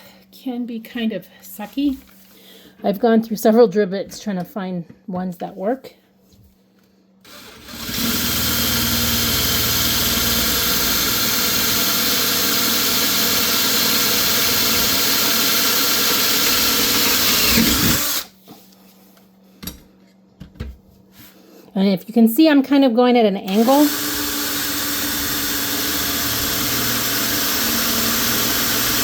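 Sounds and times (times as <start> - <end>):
electric drill boring metal: 7.3 - 18.3, 23.5 - 29.0.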